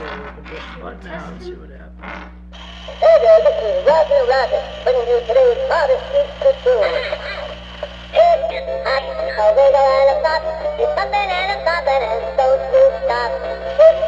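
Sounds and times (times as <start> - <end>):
tinny backing tune: 0.0 - 14.0
toy electronic voice singing: 2.6 - 14.0.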